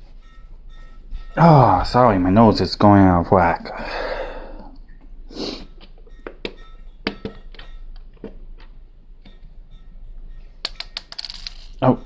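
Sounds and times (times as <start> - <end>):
short breath: 3.8 - 4.7
plastic bricks clicking together: 10.7 - 11.8.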